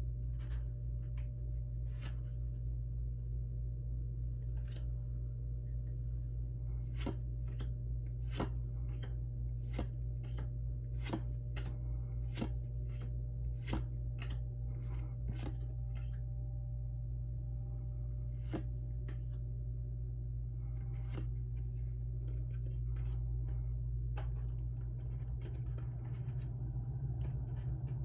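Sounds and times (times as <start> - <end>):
steady low hum: 0.0 - 28.0
trading cards snapping: 6.9 - 11.7, 12.3 - 14.4.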